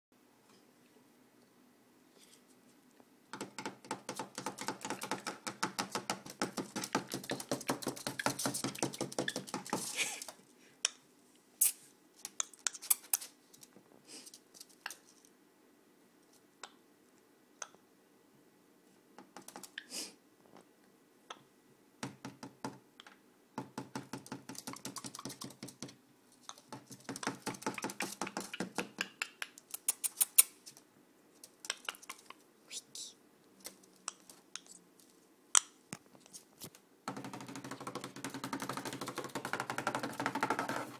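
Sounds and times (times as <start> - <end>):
parrot clicking: 27.0 - 30.5, 31.6 - 32.4.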